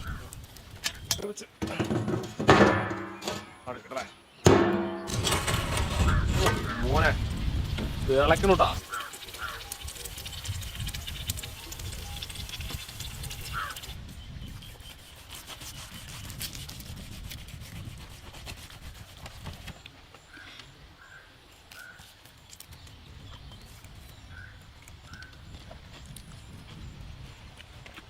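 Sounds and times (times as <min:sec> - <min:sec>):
meat crackling and sizzling on fire: 0:05.1 - 0:14.1.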